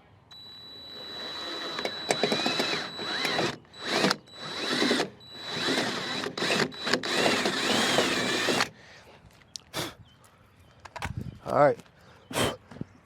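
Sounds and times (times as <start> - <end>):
power drill drilling sheet metal: 0.4 - 8.7.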